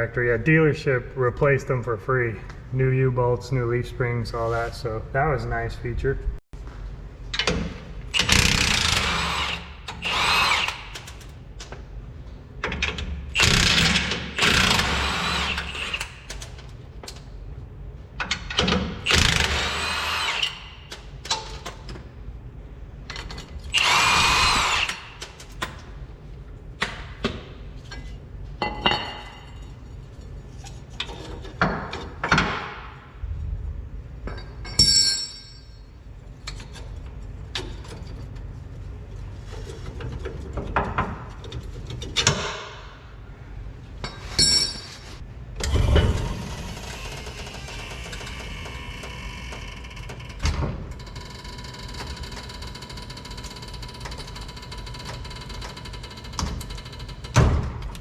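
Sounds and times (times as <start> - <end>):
power tool whirring: 8.2 - 11.2, 14.4 - 16.2, 19.1 - 20.6, 23.7 - 25.2.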